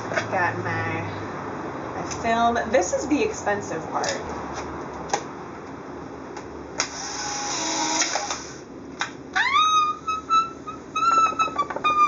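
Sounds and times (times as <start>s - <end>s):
camera motor running: 6.9s - 8.6s
high-pitched squeal: 9.4s - 12.0s.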